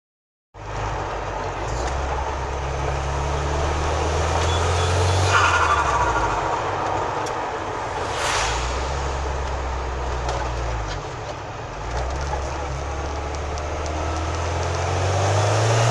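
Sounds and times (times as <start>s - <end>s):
turbocharged car engine revving: 1.7s - 11.0s.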